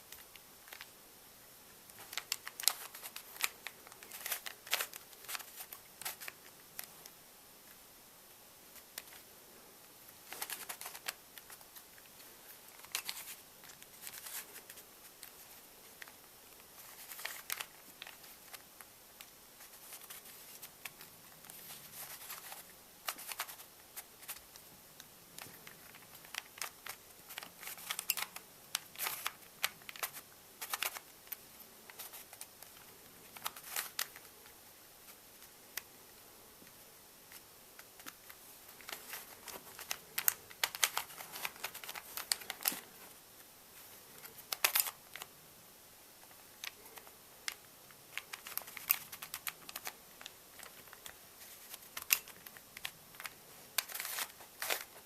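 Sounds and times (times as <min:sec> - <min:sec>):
puzzle cube clicking: 0:39.8 - 0:42.8.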